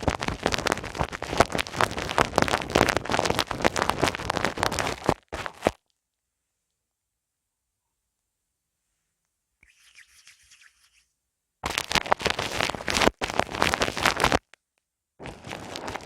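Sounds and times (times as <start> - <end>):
hands rubbing microphone: 0.0 - 5.7, 9.6 - 11.1, 11.7 - 14.4, 15.2 - 16.0.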